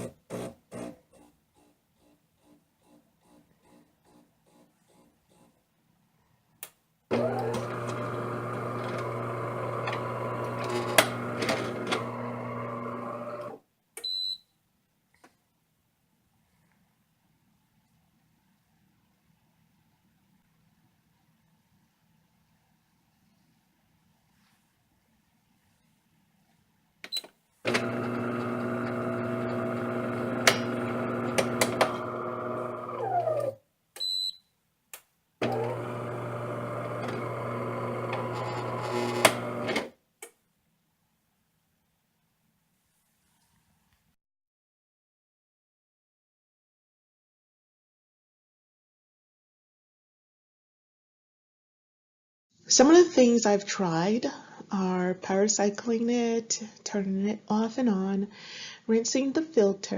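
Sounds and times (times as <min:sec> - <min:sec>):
coffee machine motor hum: 0:07.1 - 0:13.6, 0:27.7 - 0:33.6, 0:35.4 - 0:39.9.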